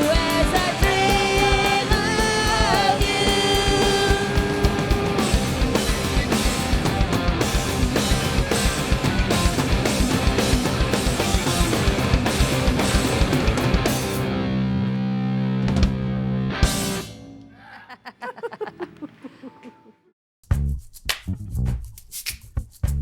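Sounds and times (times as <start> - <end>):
punk rock band playing live: 0.0 - 14.8, 15.4 - 17.3.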